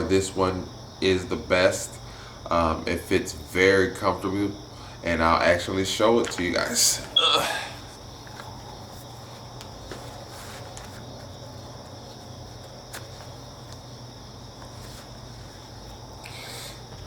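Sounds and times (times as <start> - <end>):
high insect-like trill: 3.6 - 9.6.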